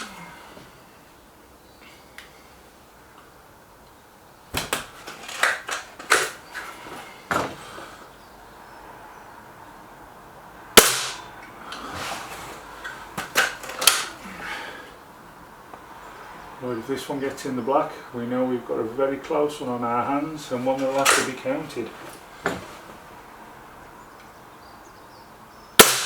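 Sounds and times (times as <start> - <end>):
air rifle shots: 10.8 - 11.3, 13.2 - 14.2, 25.8 - 26.0
pellets striking targets: 10.8 - 11.3, 25.8 - 26.0.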